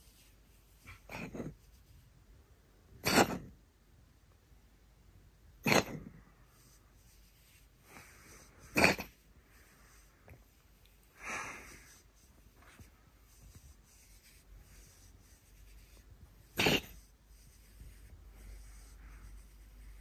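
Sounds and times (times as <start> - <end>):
cat coughing: 1.0 - 1.6, 3.0 - 3.5, 5.6 - 6.1, 8.6 - 9.2, 16.4 - 17.1.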